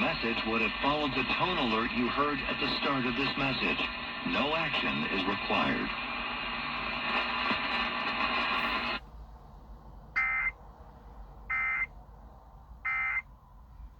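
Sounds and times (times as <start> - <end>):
humming radio background noise: 0.0 - 9.1.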